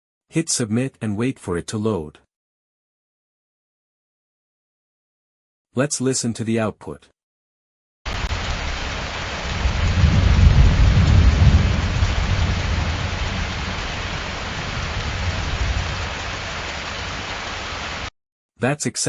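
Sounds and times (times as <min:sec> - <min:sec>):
thunder rumble: 0:08.1 - 0:17.4
rain hiss: 0:08.1 - 0:18.1.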